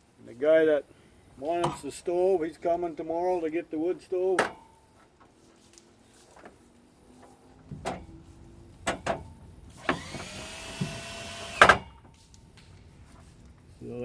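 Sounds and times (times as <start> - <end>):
metal knocks and clanks: 7.6 - 8.2
power drill driving a screw: 9.7 - 12.0.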